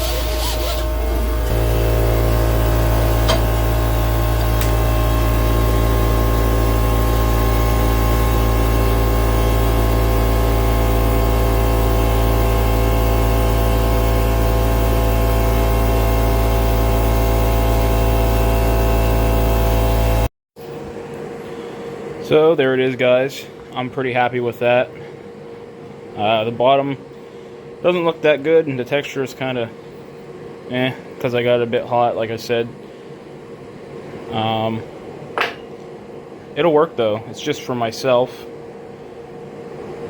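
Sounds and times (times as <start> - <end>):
machine humming: 0.0 - 20.3.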